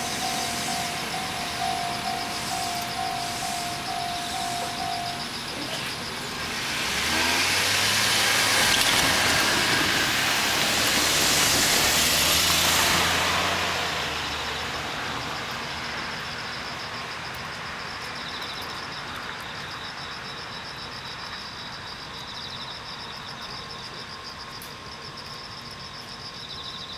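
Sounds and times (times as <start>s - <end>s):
vehicle passing rumble: 0.0s - 18.1s
crickets chirping: 0.0s - 26.9s.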